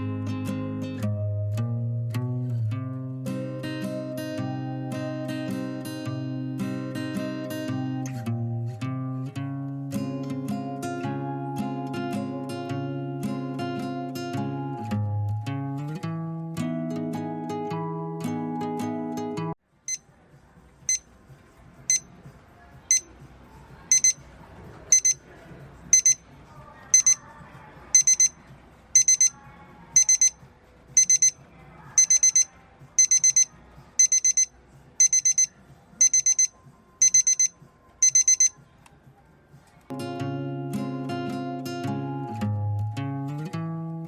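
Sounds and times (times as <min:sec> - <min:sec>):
digital alarm clock beeping: 0:20.9 - 0:21.1, 0:21.9 - 0:22.1, 0:23.9 - 0:24.2, 0:24.9 - 0:25.2, 0:25.9 - 0:26.2, 0:26.9 - 0:27.2, 0:27.9 - 0:28.4, 0:29.0 - 0:29.4, 0:30.0 - 0:30.4, 0:31.0 - 0:31.4, 0:32.0 - 0:38.6.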